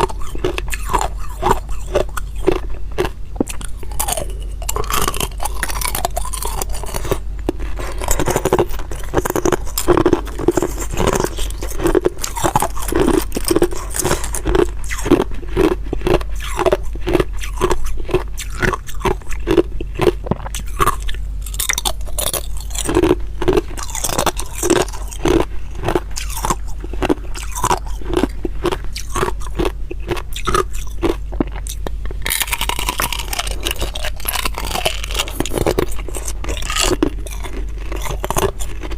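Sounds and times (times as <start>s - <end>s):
ice crunching while chewed: 0.0s - 38.9s.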